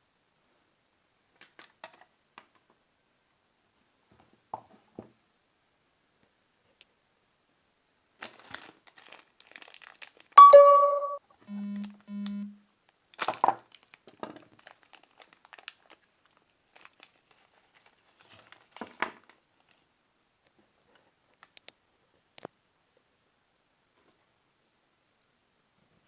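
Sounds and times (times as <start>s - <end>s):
packaging crinkling: 8.2s - 10.4s, 13.2s - 18.9s
loud ringing tone: 10.4s - 12.6s
short low beeps: 10.4s - 12.6s.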